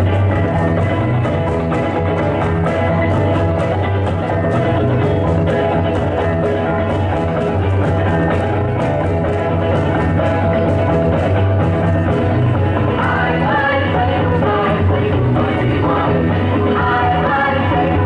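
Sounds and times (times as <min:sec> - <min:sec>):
rock music with guitar and drums: 0:00.0 - 0:18.0.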